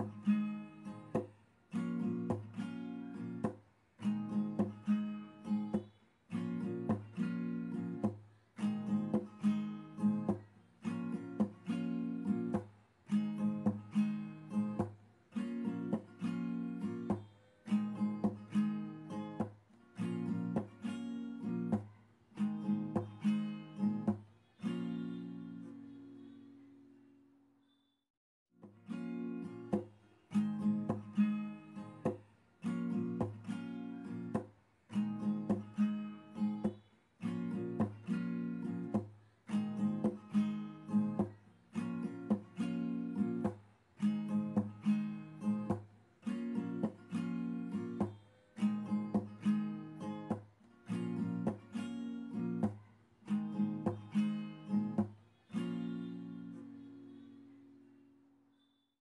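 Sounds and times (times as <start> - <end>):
strummed guitar chords: 0.0 - 26.4, 28.6 - 57.4.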